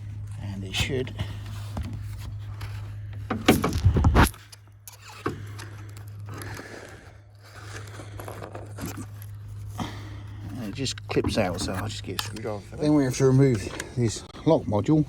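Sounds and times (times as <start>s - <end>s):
light scraping and clicking: 10.5s - 14.1s.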